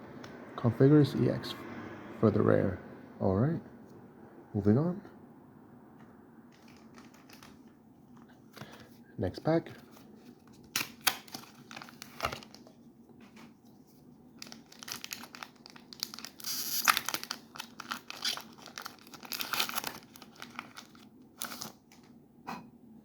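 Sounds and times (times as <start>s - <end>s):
foil wrapper crinkling and tearing: 6.6s - 7.6s, 10.5s - 12.7s, 14.4s - 22.1s.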